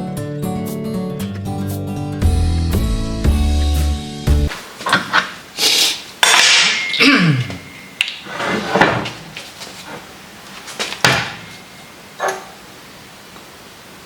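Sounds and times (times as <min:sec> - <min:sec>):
sharp metal clink: 0:06.2 - 0:08.2
metal parts clattering and scraping: 0:06.2 - 0:12.5.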